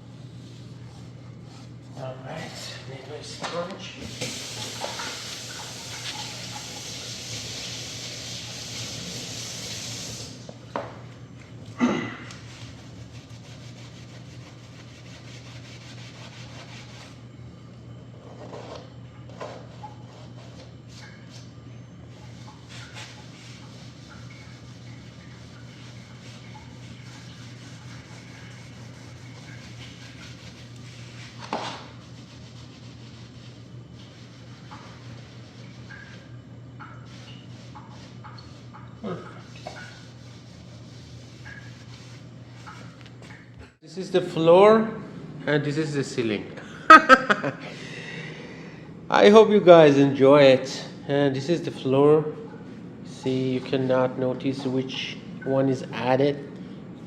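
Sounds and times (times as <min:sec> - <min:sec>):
steady low hum: 0:00.0 - 0:04.1, 0:10.2 - 0:57.0
water running from a tap: 0:04.1 - 0:10.5.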